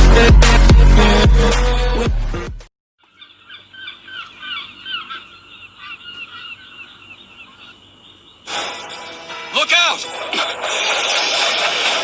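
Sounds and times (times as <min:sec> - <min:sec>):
music: 0:00.0 - 0:02.7, 0:08.5 - 0:12.0
flock of birds calling: 0:03.0 - 0:08.5.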